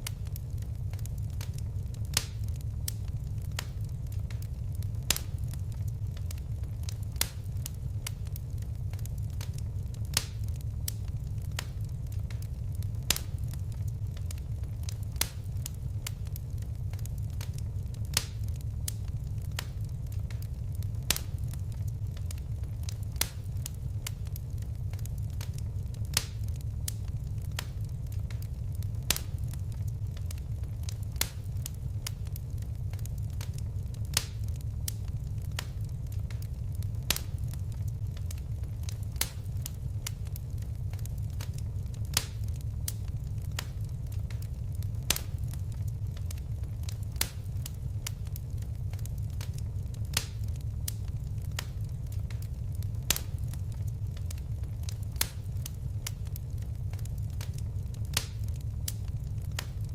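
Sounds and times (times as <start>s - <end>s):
flames rumbling: 0.0s - 59.9s
wood fire crackling: 0.0s - 59.9s.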